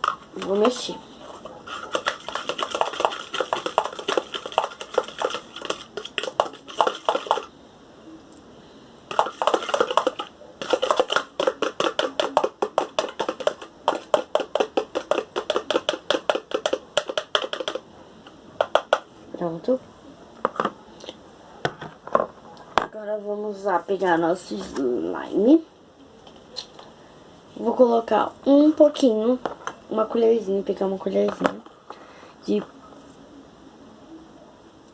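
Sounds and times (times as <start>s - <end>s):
fork stirring and clinking in container: 0.0s - 7.5s, 9.1s - 17.8s.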